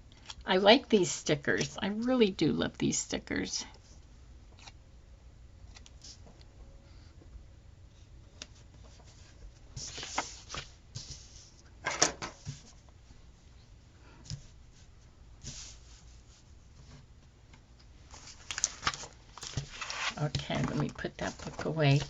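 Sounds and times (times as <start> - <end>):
paper sticker sheets rustling: 9.8 - 11.5, 18.1 - 22.0.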